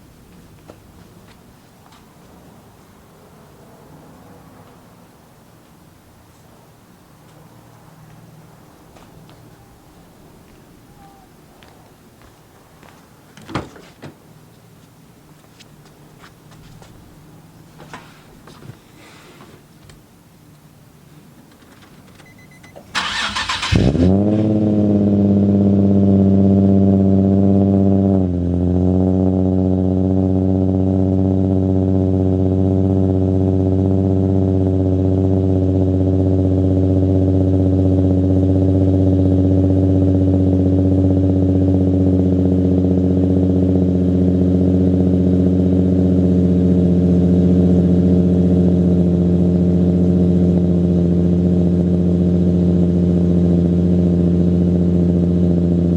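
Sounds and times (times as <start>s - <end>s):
car engine idling: 0.0s - 13.5s, 14.2s - 27.6s, 28.5s - 55.9s
starter cranking engine: 22.9s - 24.1s.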